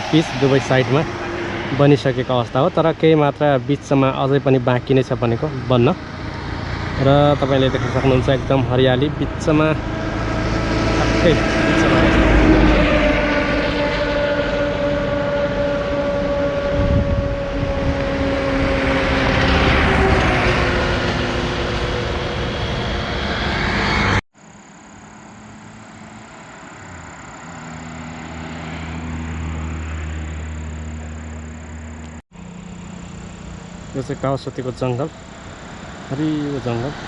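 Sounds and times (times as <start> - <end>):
road and wind noise: 0.0 - 37.0
steady high whine: 0.0 - 37.0
vehicle engine running: 0.0 - 37.0.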